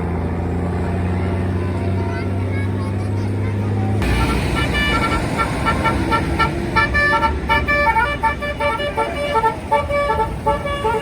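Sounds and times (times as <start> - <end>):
bus rumble: 0.0 - 11.0
traffic: 0.0 - 11.0
musical bus horn melody: 4.0 - 11.0.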